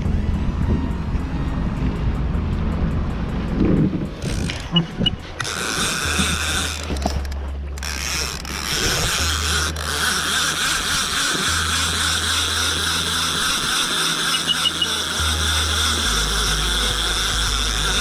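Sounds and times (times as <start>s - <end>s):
fishing reel whirring: 0.0s - 18.0s.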